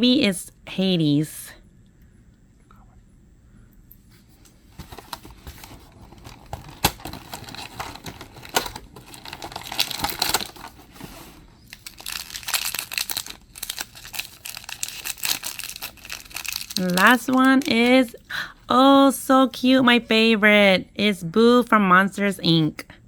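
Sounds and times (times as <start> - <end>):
packaging crinkled and torn: 6.0 - 18.2.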